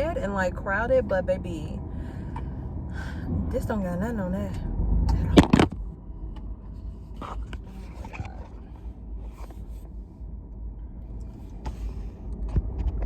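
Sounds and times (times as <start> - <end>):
low rumble inside car cabin: 0.0 - 13.0
light scrapes and clicks: 6.7 - 9.9, 11.2 - 13.0.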